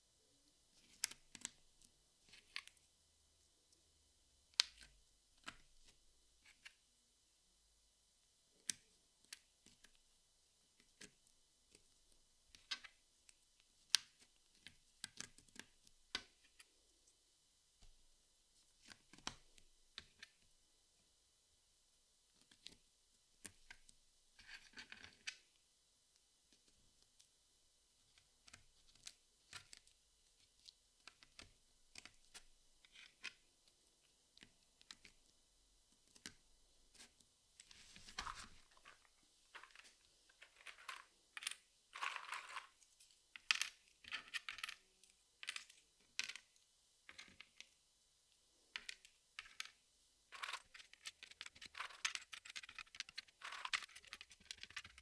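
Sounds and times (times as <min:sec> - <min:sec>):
puzzle pieces rustling: 0:37.7 - 0:42.7, 0:50.4 - 0:55.0
puzzle pieces clicking: 0:50.4 - 0:55.0.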